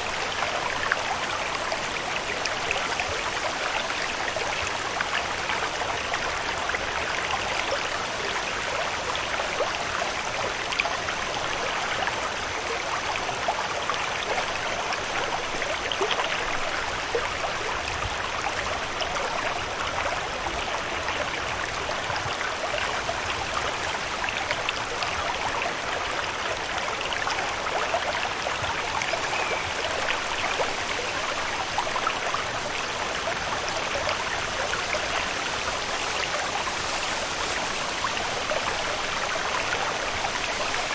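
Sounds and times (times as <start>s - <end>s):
water pattering and trickling: 14.4s - 40.9s.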